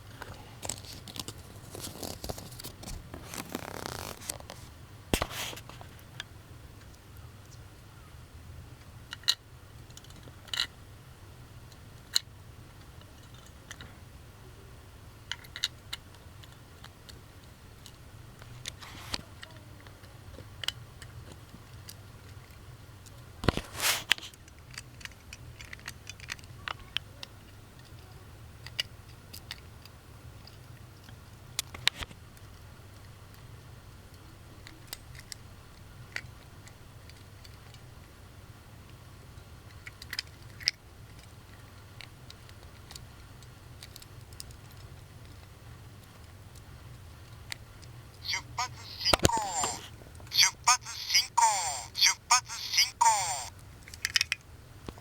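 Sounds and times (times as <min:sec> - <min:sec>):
rustling scrapes: 0:00.1 - 0:06.0, 0:23.5 - 0:24.4
small plastic objects clicking: 0:24.5 - 0:26.6, 0:53.8 - 0:54.4.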